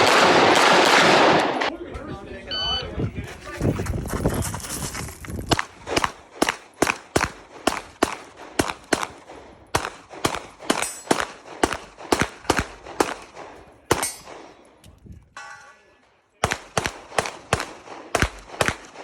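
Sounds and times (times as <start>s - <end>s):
rapid gunshots with echo: 0.0s - 1.7s, 5.5s - 14.6s, 16.4s - 19.0s.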